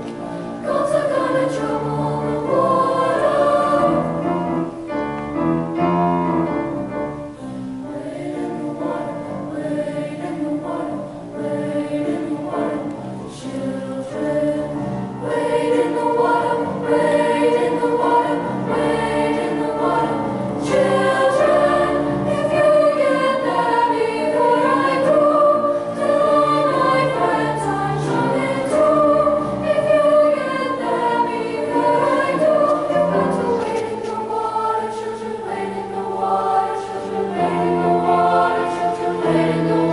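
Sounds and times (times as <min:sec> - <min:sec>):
choir singing in parts: 0:00.0 - 0:39.9.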